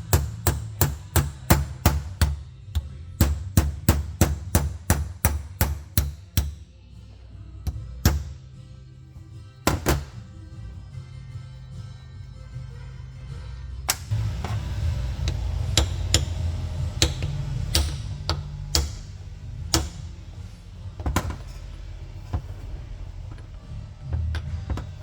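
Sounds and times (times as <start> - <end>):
background music: 0.0 - 25.0
hammer tapping on metal: 15.2 - 20.1.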